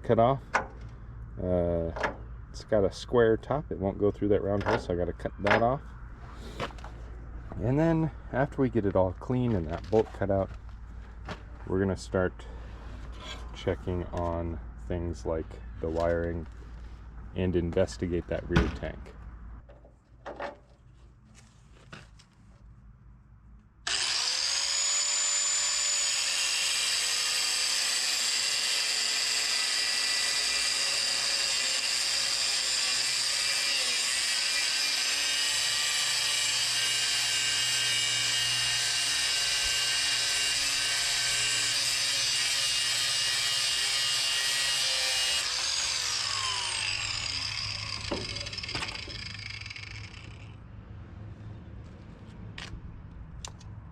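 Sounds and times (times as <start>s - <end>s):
angle grinder cutting bolt: 23.9s - 50.6s.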